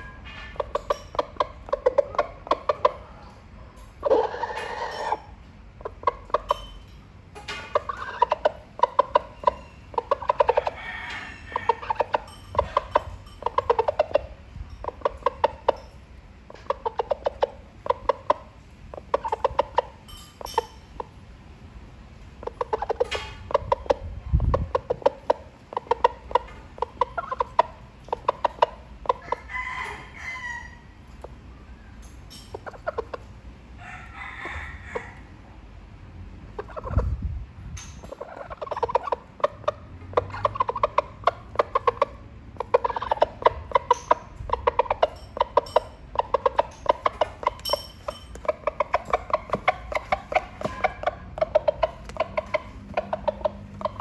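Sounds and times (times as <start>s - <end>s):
rooster clucking: 0.0s - 54.0s.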